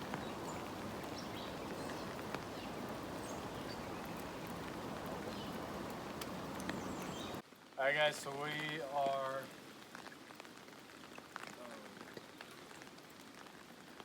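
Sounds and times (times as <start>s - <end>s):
drops ticking close by: 0.0s - 7.4s
heavy rain hissing: 0.0s - 9.8s.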